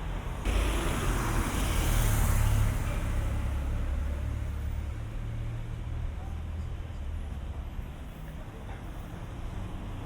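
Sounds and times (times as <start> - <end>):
low rumble of traffic: 0.0 - 10.0
vehicle passing by: 0.5 - 4.6.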